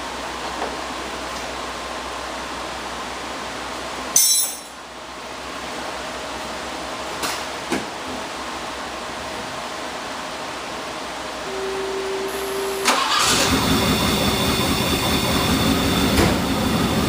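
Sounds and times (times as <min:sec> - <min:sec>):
ringing metallic clink: 0:04.2 - 0:04.8.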